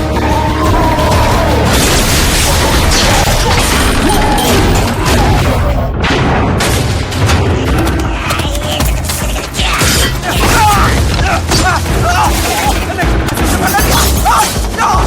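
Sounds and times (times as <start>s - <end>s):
dramatic film score: 0.0s - 15.0s
deep booms: 0.7s - 8.2s
crashing impacts: 1.6s - 14.7s.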